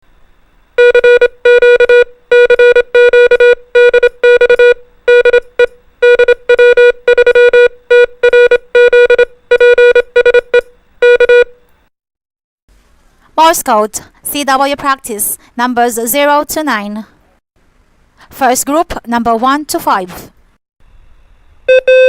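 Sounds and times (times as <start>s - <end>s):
morse code beeps: 0.8s - 11.6s, 21.7s - 22.0s.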